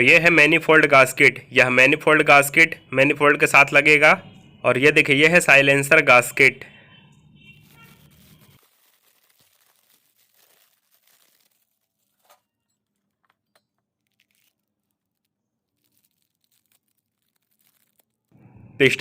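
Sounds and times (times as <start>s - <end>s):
plastic packet crinkling: 7.5s - 18.4s.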